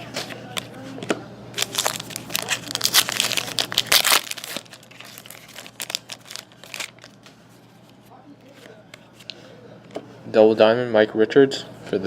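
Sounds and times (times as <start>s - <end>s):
wrapper tearing and crinkling: 1.6s - 7.2s
cards rustling: 1.6s - 7.3s.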